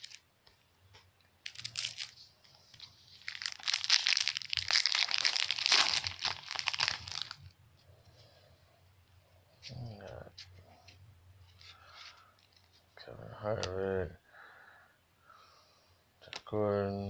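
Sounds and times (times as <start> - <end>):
card pack wrapper crinkling: 0.0 - 0.2, 1.4 - 7.5.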